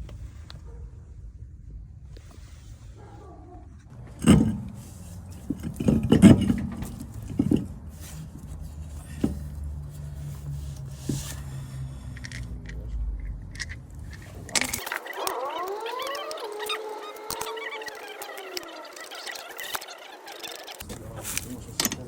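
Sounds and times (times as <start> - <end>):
metal tools clinking and scraping: 3.9 - 15.2, 20.8 - 22.0.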